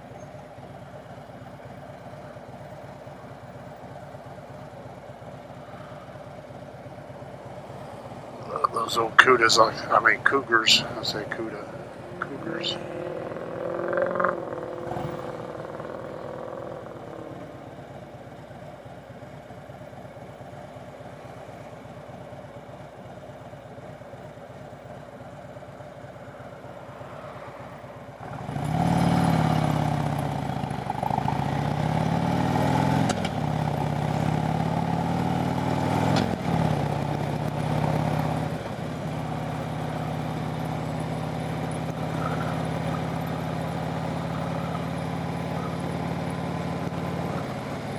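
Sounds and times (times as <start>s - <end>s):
motorcycle engine revving: 5.3s - 19.8s, 25.9s - 47.9s.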